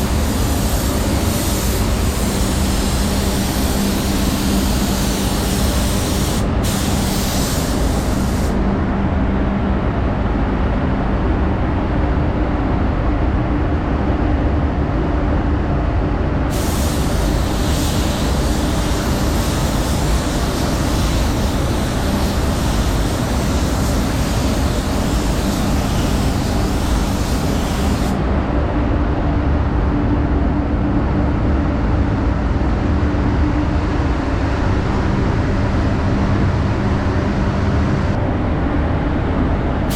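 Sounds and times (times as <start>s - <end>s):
paint spray gun hissing: 0.0s - 8.6s, 16.5s - 28.2s
extraction fans roaring: 0.0s - 39.9s.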